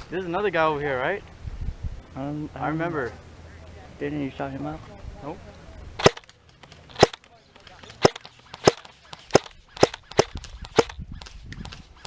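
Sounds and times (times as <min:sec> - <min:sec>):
airsoft gun shots: 0:06.0 - 0:06.3, 0:06.9 - 0:07.3, 0:08.0 - 0:11.8.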